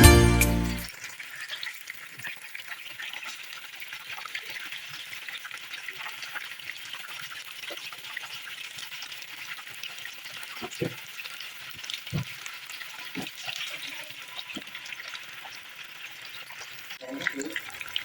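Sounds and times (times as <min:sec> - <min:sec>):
fish sizzling in hot oil: 0:00.9 - 0:18.0.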